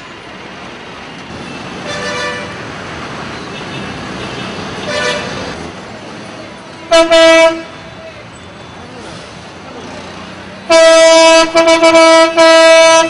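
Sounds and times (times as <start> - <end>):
road traffic: 0.0 - 13.0
vehicle horns honking: 1.4 - 2.6, 3.4 - 5.6, 6.7 - 8.7, 10.7 - 13.0.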